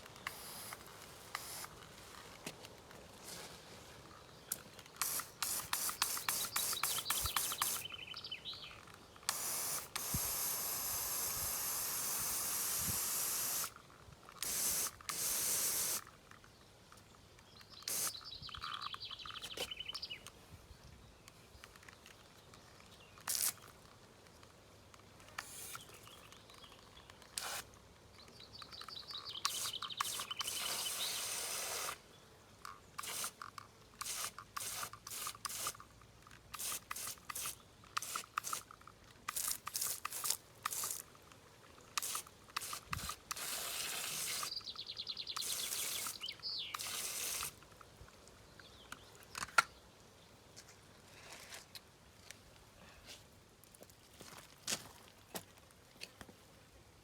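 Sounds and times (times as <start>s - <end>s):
bird chirping: 5.2s - 9.3s, 17.4s - 20.3s, 28.2s - 32.2s, 44.4s - 47.0s.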